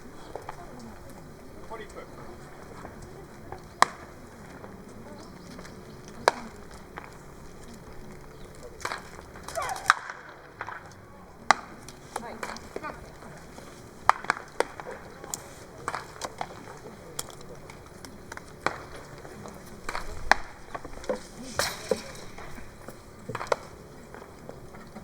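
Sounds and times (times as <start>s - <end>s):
baseball impacts: 18.6s - 24.2s.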